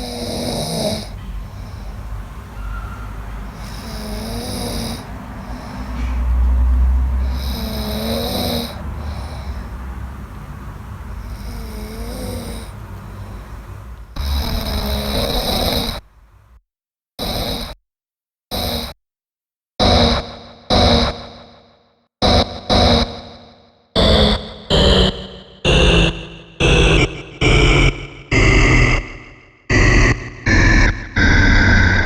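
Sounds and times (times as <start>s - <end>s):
man snoring loudly: 0.0s - 1.8s, 3.5s - 5.9s, 7.2s - 9.7s, 11.2s - 12.8s, 14.2s - 16.0s, 17.2s - 17.8s, 18.5s - 19.0s.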